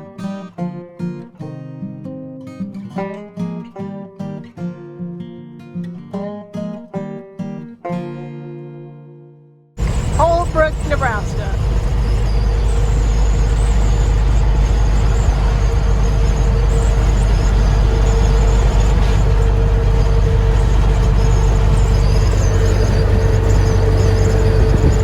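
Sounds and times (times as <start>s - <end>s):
faint high squeaks: 9.8s - 25.0s
truck engine and road drone: 9.8s - 25.0s.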